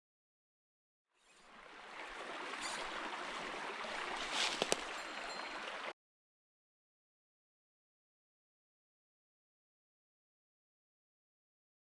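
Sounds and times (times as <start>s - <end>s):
stream water running: 1.2s - 6.0s.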